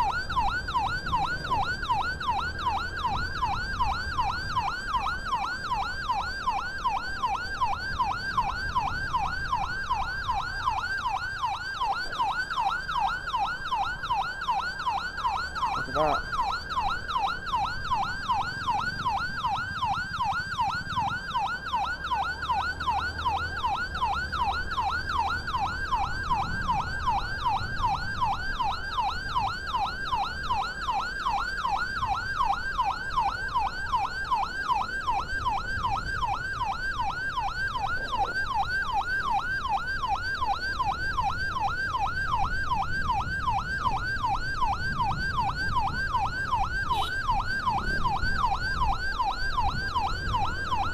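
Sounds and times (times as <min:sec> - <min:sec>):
ambulance siren yelping: 0:00.0 - 0:50.9
vehicle rumble: 0:00.0 - 0:50.9.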